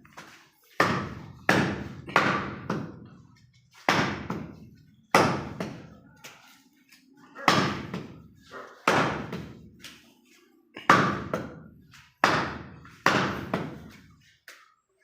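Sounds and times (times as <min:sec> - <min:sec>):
cleaver chopping meat and bone: 0:00.8 - 0:03.0, 0:12.2 - 0:13.8.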